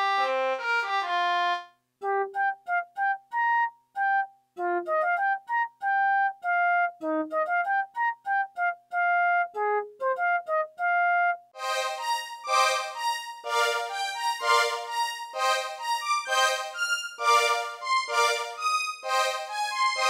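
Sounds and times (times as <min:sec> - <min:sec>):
synthesizer melody: 0:04.1 - 0:20.0.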